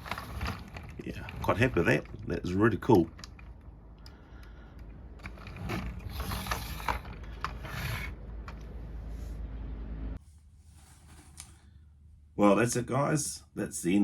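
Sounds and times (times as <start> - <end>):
plastic toy clicks and rattles: 0.0 - 3.7, 4.8 - 8.1.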